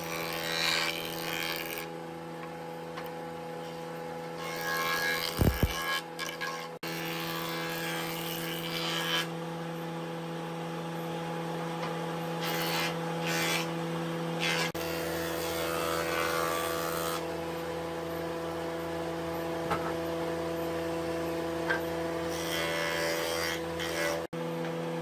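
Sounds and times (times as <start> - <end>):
power tool motor humming: 4.6 - 9.0.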